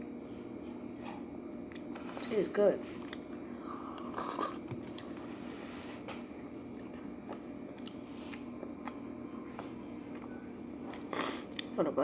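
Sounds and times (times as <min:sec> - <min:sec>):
steady low hum: 0:00.0 - 0:12.0
person chewing oatmeal: 0:03.0 - 0:05.5, 0:06.4 - 0:11.8.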